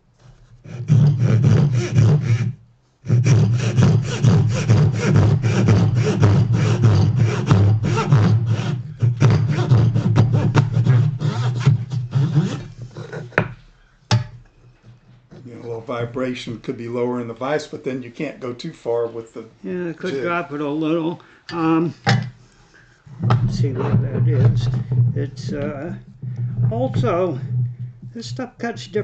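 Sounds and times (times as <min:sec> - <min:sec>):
hand saw cutting wood: 0:00.6 - 0:13.7, 0:23.1 - 0:26.0, 0:26.6 - 0:27.5.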